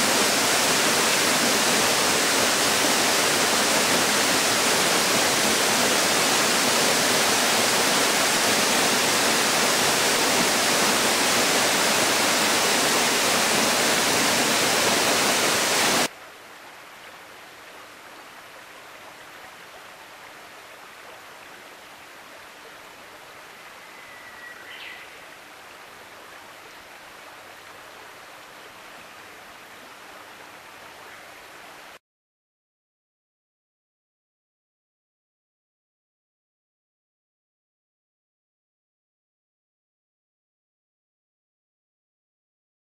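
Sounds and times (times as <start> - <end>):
waterfall rushing: 0.0 - 16.1.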